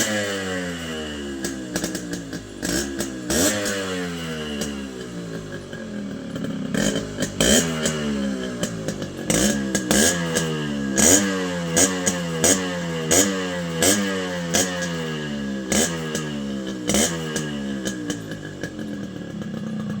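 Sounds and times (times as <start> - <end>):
two-stroke engine revving: 0.0 - 20.0.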